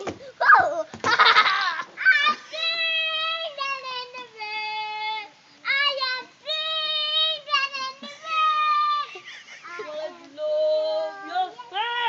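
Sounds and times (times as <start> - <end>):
child singing wordless melody: 2.2 - 12.0.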